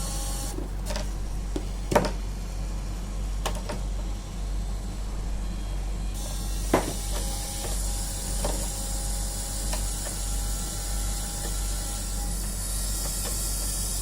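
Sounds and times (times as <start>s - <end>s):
scanner motor whining: 0.0s - 0.6s, 3.9s - 14.0s.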